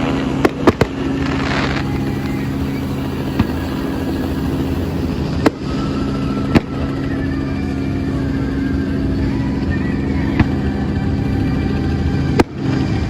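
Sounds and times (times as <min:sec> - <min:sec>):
loud low hum: 0:00.0 - 0:13.0
fireworks bangs: 0:00.4 - 0:05.6, 0:10.3 - 0:11.7.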